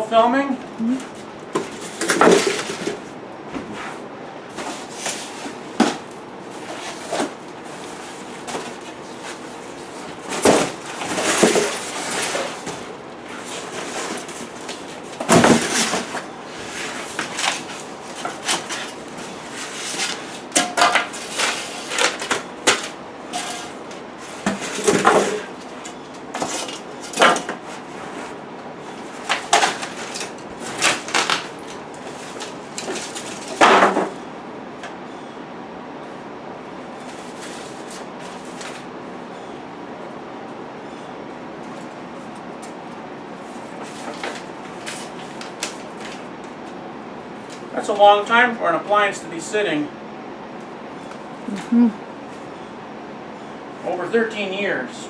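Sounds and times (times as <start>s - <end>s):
objects knocking and clattering: 1.1s - 3.9s, 8.4s - 16.3s, 17.0s - 27.8s, 29.1s - 34.2s
short rustling sweeps: 3.5s - 5.5s.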